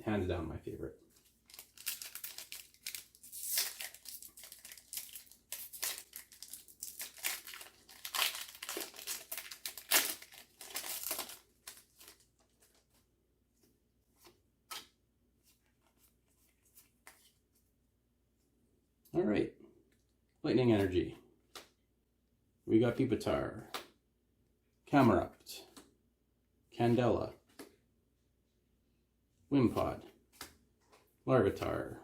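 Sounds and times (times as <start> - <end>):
wrapper tearing and crinkling: 1.4 - 12.3.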